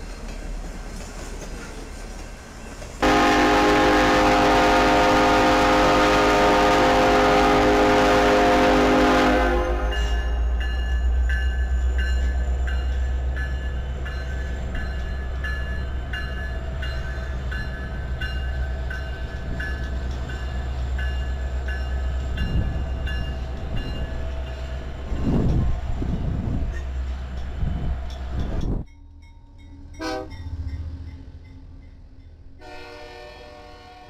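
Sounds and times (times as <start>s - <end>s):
passing train rumble: 0.0s - 34.0s
crossing bell ringing: 2.4s - 25.6s, 26.6s - 33.0s
train horn chord: 3.0s - 10.6s, 30.0s - 30.4s, 32.6s - 34.0s.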